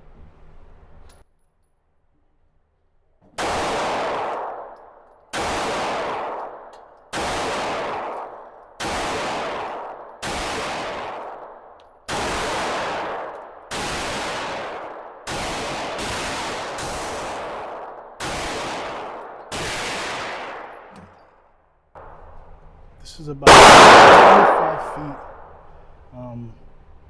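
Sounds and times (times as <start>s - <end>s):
pistol shots with echo: 3.4s - 20.9s, 23.4s - 25.6s.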